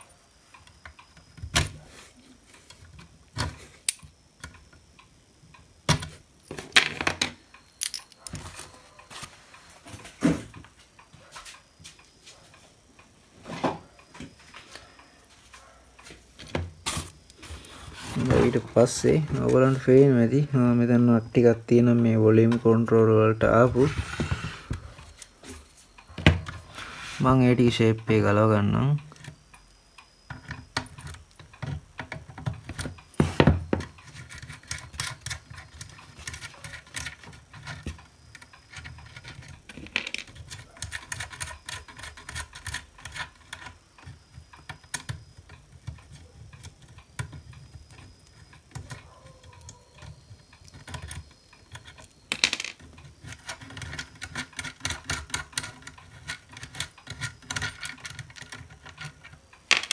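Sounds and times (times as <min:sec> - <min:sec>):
metallic clicks of hand tools: 0:03.8 - 0:04.6, 0:07.5 - 0:08.7.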